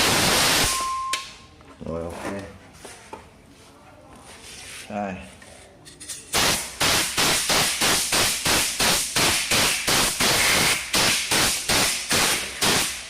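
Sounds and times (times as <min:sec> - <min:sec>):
compressed air blasts: 0:00.0 - 0:00.8, 0:06.4 - 0:13.0.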